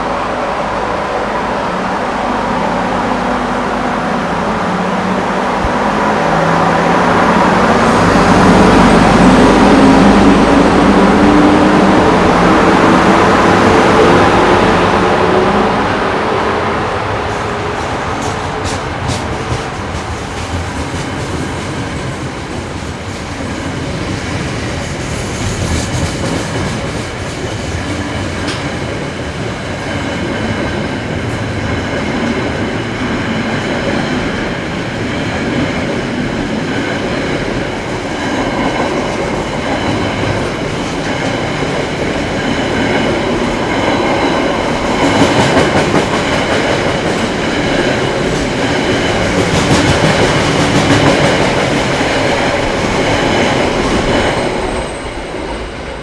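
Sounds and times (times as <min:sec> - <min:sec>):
train rumbling on rails: 0:00.0 - 0:56.0
clickety-clack of wheels: 0:17.3 - 0:32.6, 0:44.6 - 0:55.0.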